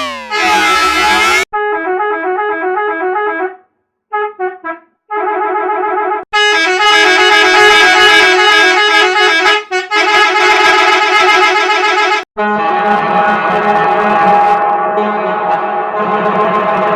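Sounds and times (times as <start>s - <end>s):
distorted horn tune: 0.0s - 1.5s
musical bus horn tune: 0.0s - 3.5s, 4.1s - 13.4s, 14.8s - 16.9s.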